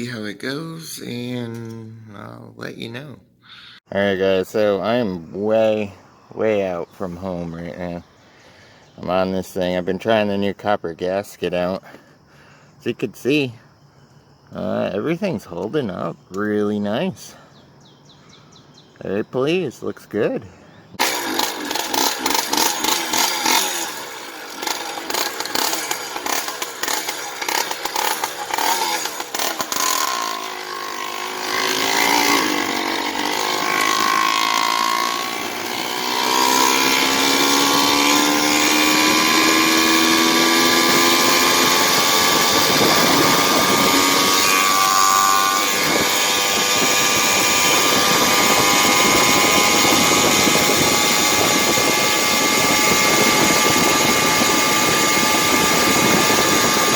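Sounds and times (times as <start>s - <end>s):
two-stroke engine revving: 21.0s - 56.9s.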